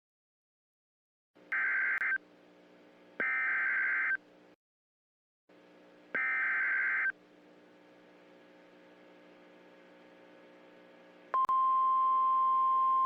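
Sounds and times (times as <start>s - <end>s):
faint steady hum: 5.5s - 13.0s.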